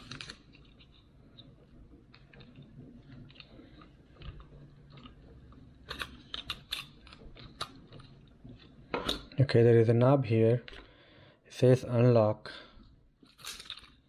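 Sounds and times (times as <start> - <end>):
plastic parts clicking and rattling: 0.0 - 1.5.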